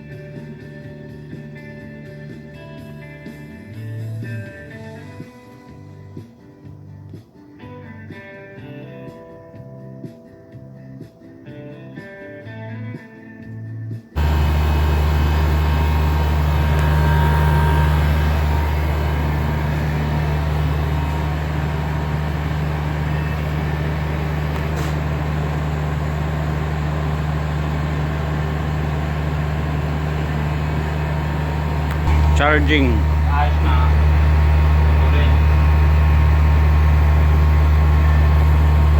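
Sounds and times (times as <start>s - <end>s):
air conditioner compressor hum: 14.2s - 38.9s.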